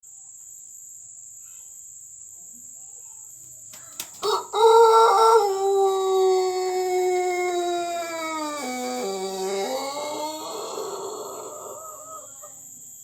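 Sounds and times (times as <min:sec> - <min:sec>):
rooster crowing: 0:04.2 - 0:12.6.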